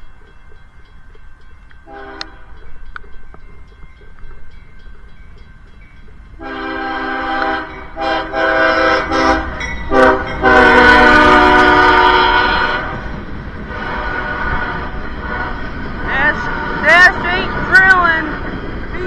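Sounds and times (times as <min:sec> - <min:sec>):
low train rumble: 0:00.0 - 0:19.0
locomotive air horn blasts: 0:01.9 - 0:02.6, 0:06.4 - 0:18.3.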